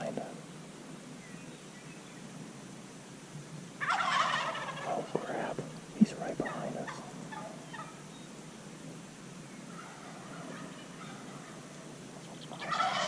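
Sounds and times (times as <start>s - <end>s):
turkey gobbling: 3.8s - 8.0s, 9.7s - 13.0s.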